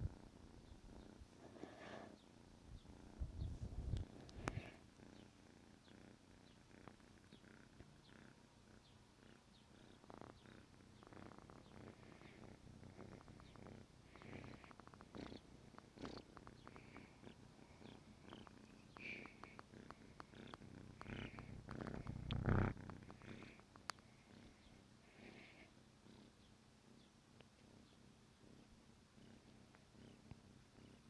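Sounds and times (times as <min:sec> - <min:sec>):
kitten purring: 0:00.0 - 0:31.0
small clicks: 0:18.3 - 0:23.2, 0:23.8 - 0:24.1.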